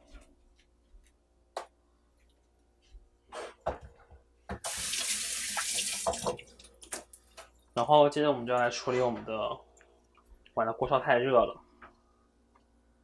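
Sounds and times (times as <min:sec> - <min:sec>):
tap water running: 0:04.5 - 0:07.2.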